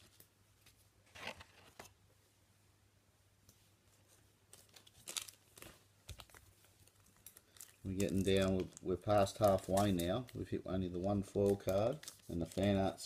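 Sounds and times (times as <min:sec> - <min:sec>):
wrappers tearing and crinkling: 0:04.5 - 0:10.4, 0:11.3 - 0:13.0.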